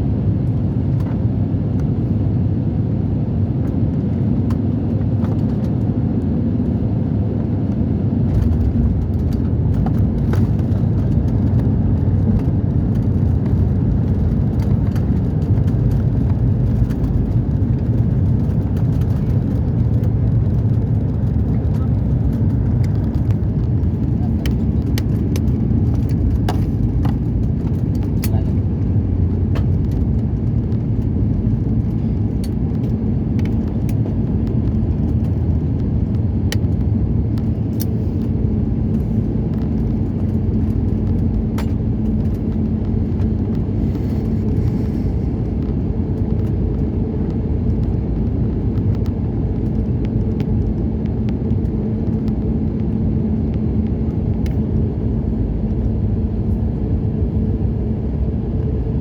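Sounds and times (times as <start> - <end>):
airliner cabin rumble: 0.0 - 59.0.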